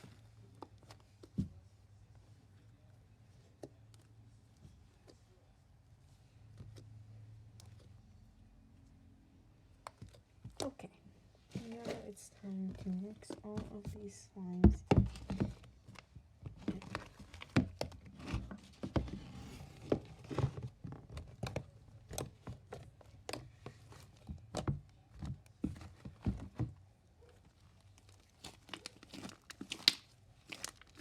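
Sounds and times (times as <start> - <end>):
slime clicking and popping: 28.4 - 31.0.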